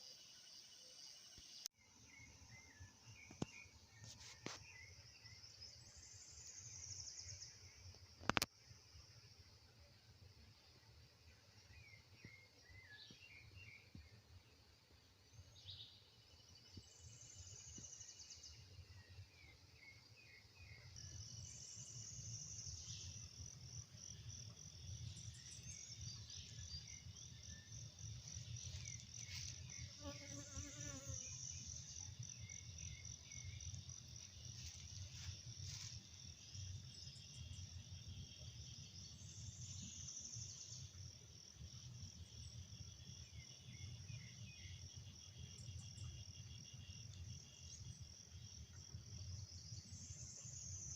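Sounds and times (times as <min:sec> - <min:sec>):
insects trilling: 0:19.8 - 0:50.9.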